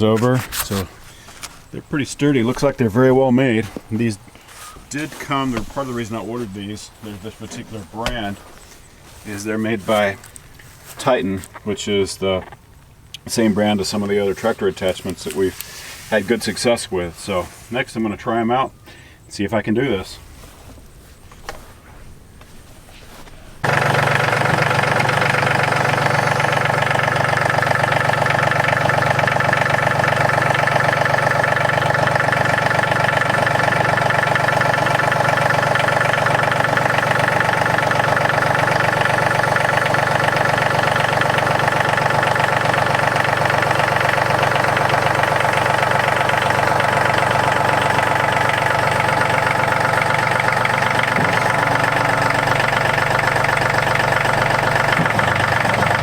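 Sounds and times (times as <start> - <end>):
tractor diesel engine running: 0.0 - 11.0, 23.6 - 56.0.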